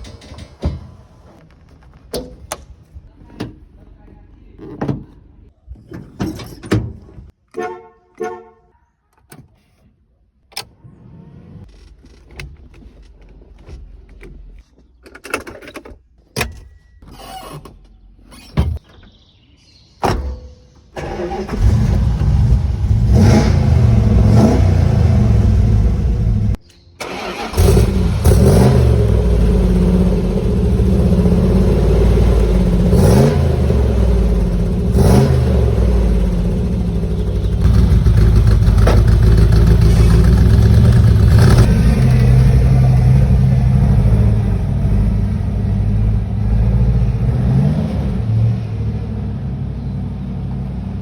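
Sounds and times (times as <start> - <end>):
engine revving in throttle blips: 21.0 - 50.8
engine exhaust rumble: 21.0 - 51.0.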